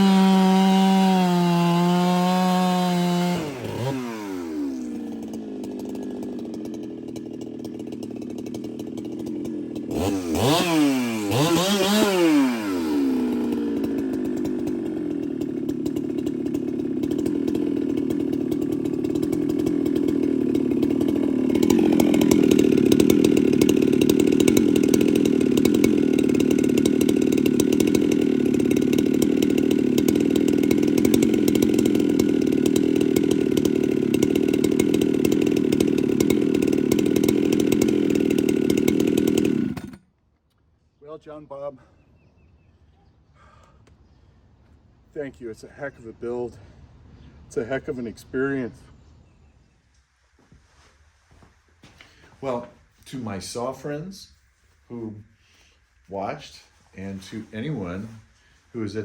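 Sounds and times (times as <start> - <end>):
chainsaw revving: 0.0 - 40.1, 54.9 - 59.0.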